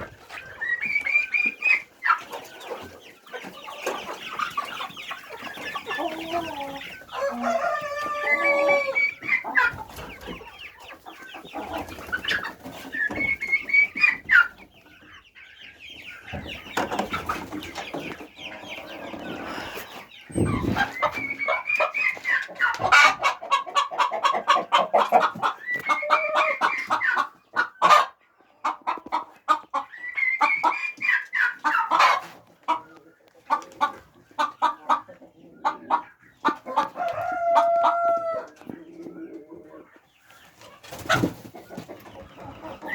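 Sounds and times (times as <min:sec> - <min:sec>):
chickens clucking and calling: 0:00.0 - 0:42.9.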